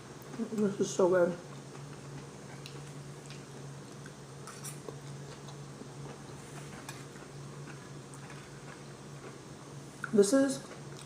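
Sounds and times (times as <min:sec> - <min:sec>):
steady low hum: 0:00.0 - 0:11.0
faint chewing: 0:01.5 - 0:09.4, 0:10.0 - 0:11.0.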